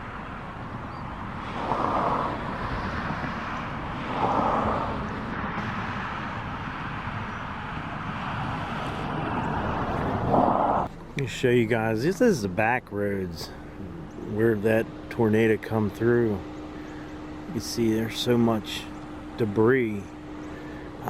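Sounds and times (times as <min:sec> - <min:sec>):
car engine and road noise: 0:00.0 - 0:21.0.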